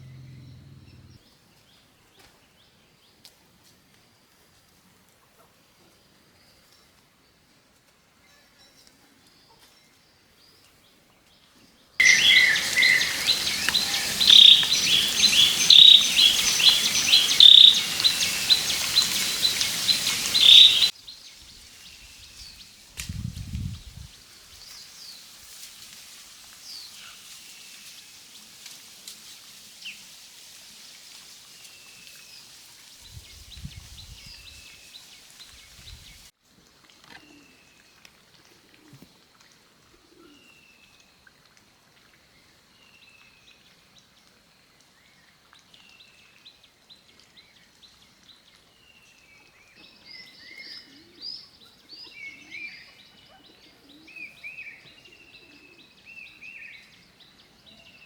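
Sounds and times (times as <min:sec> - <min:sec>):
background hiss: 0:00.0 - 0:01.2, 0:12.0 - 0:36.3
birds calling and singing: 0:12.0 - 0:20.9
falling bird whistle: 0:12.0 - 0:20.9.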